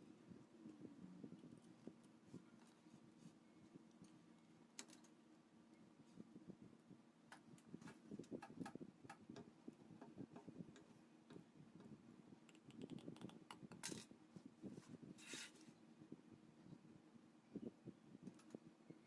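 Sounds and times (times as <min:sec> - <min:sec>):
short hissing scrapes: 0:15.2 - 0:15.6.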